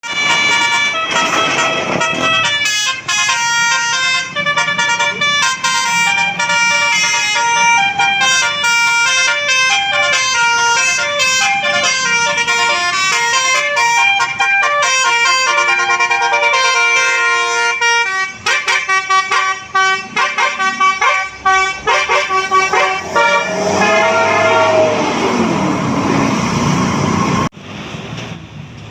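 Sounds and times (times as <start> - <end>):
musical air horn tune: 0.0 - 25.6
rushing noise: 20.0 - 28.4.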